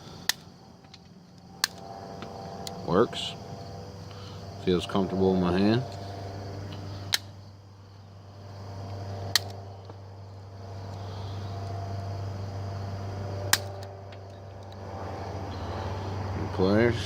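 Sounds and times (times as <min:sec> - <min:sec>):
steady low hum: 0:00.0 - 0:17.0
wire cutters snapping wire: 0:00.2 - 0:02.8, 0:07.1 - 0:07.4, 0:09.2 - 0:10.0, 0:13.5 - 0:14.8.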